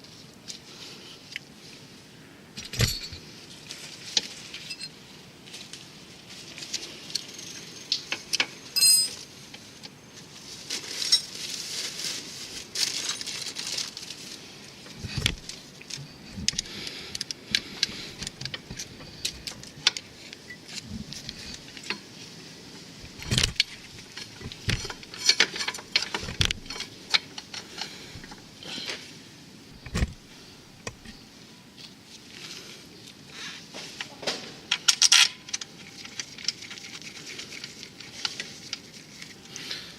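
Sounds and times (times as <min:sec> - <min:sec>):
metal tools clinking: 0:02.6 - 0:03.3, 0:04.6 - 0:05.0, 0:08.8 - 0:09.2, 0:23.0 - 0:28.5.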